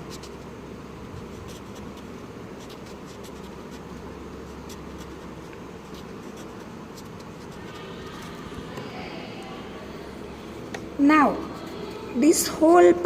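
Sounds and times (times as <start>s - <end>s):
low background hum: 0.0s - 13.0s
pen drawing on paper: 1.2s - 8.9s.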